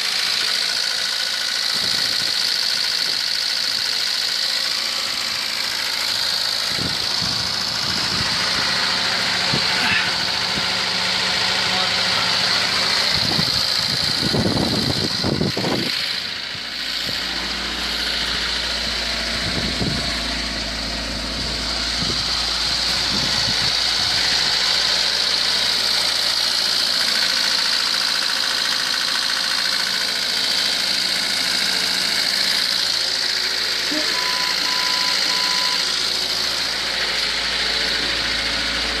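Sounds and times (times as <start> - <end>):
car engine idling: 0.0 - 39.0
short beeps: 33.9 - 35.9.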